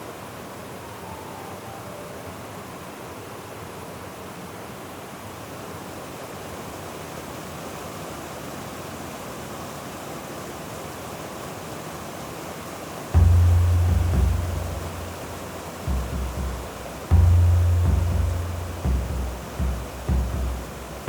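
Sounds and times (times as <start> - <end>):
waterfall rushing water: 0.0 - 21.0
low deep music note: 13.2 - 21.0.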